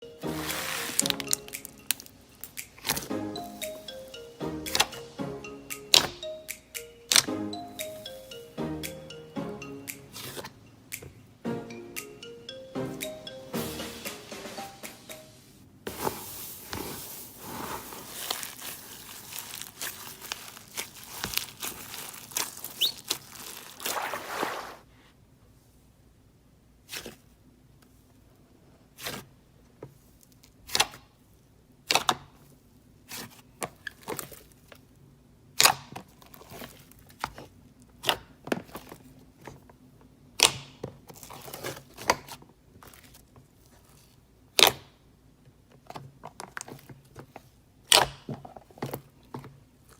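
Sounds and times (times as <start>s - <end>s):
slime crackling and tearing: 17.8s - 24.6s.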